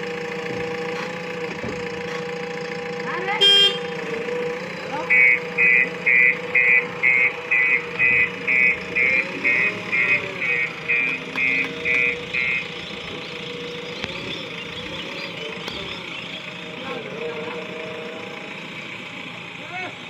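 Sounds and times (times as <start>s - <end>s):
diesel engine idling: 0.0s - 20.0s
reversing alarm beeping: 4.9s - 16.3s.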